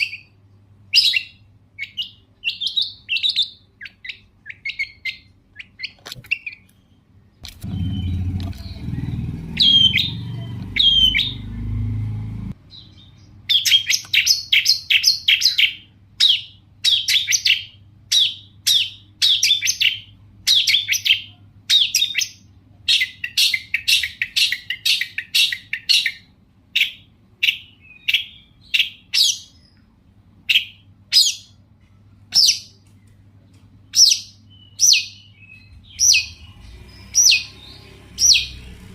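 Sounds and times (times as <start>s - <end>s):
bird singing scratchy calls: 1.0s - 11.7s, 33.9s - 38.9s
low rumbling noise: 7.4s - 13.4s.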